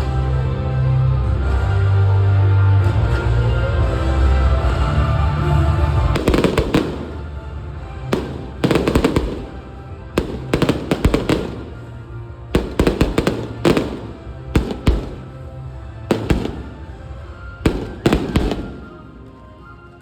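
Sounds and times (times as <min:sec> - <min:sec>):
music: 0:00.0 - 0:20.0
fireworks bangs and crackles: 0:05.4 - 0:20.0.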